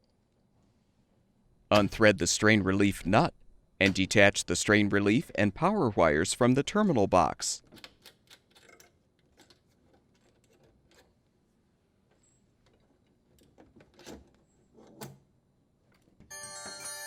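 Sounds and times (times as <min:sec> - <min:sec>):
small parts clicking and rattling: 0:07.7 - 0:11.2.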